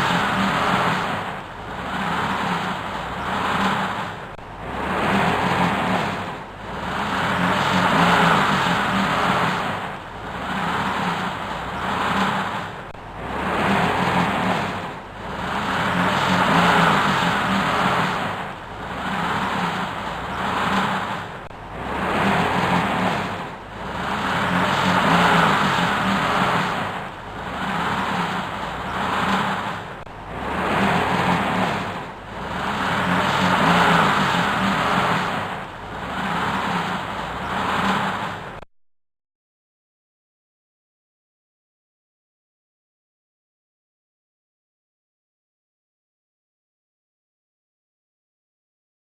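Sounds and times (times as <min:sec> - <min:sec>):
vehicle engine revving: 0:00.0 - 0:38.6.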